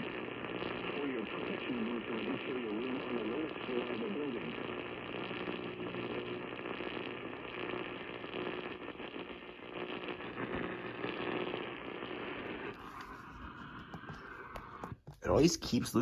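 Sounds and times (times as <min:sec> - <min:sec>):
radio static hissing and crackling: 0:00.0 - 0:16.0.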